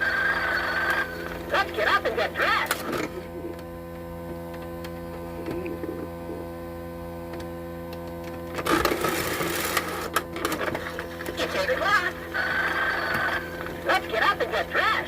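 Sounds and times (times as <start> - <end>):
noisy burst: 0.0 - 3.5, 11.3 - 15.0
electrical hum: 0.0 - 15.0.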